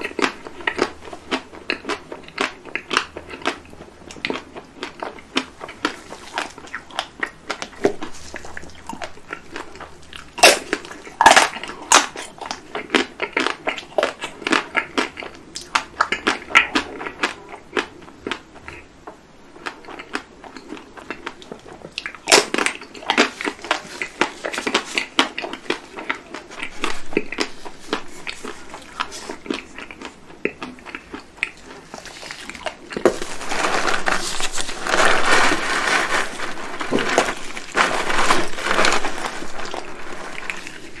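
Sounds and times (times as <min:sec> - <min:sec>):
chewing: 0:00.0 - 0:41.0
chocolate shell crunching: 0:22.0 - 0:41.0.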